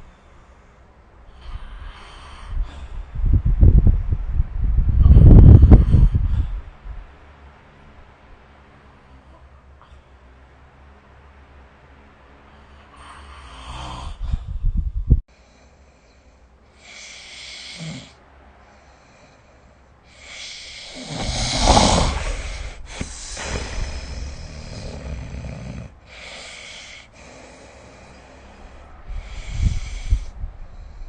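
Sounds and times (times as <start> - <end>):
hissing breaths: 0.0 - 3.4, 8.2 - 31.0
person snoring: 12.9 - 14.3, 16.8 - 18.2, 20.1 - 30.3.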